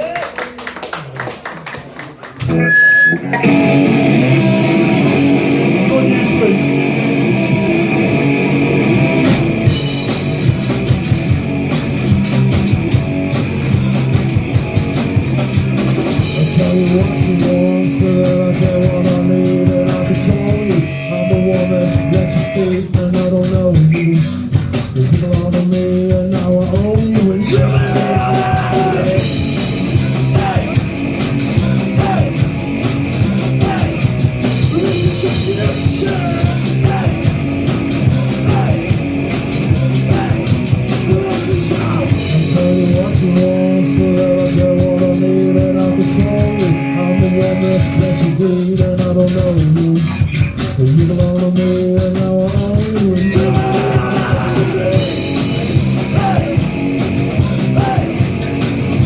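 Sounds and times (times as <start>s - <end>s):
drum kit: 0.0s - 59.0s
distorted electric guitars: 1.6s - 59.0s
person singing: 16.2s - 29.4s, 30.0s - 30.9s, 31.6s - 32.5s, 33.5s - 37.4s, 38.1s - 39.0s, 39.8s - 56.7s, 57.4s - 58.4s.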